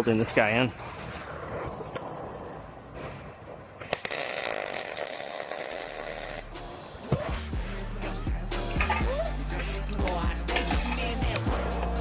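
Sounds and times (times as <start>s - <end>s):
welder crackling: 3.8s - 6.5s.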